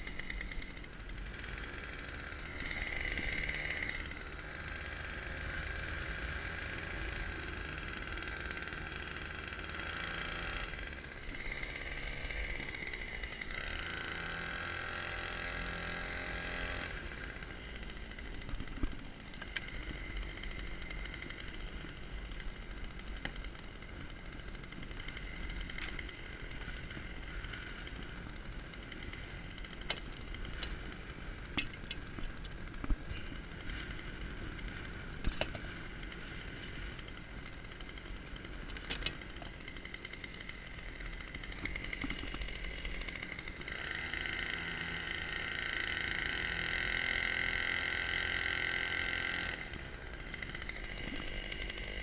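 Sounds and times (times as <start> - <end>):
small outboard motor running: 0.0 - 52.0.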